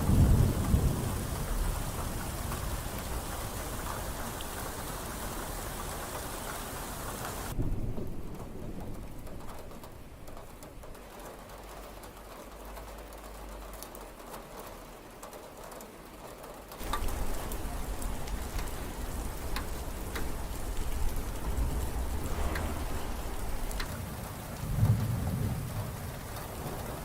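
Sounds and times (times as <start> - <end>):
heavy rain hissing: 0.0 - 10.2, 16.8 - 27.0
thunder rumbling: 0.0 - 11.2, 16.8 - 27.0
raindrop ticks: 0.0 - 27.0.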